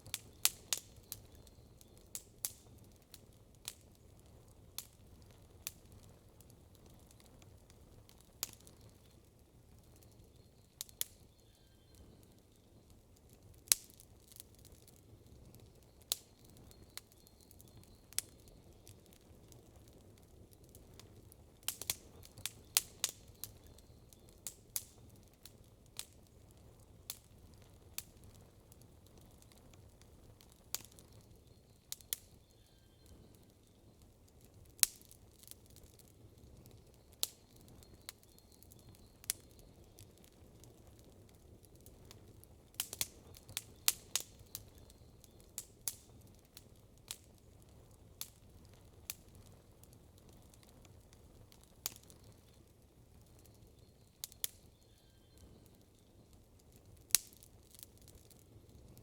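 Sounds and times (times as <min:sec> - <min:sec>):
campfire crackling and popping: 0:00.0 - 0:59.0.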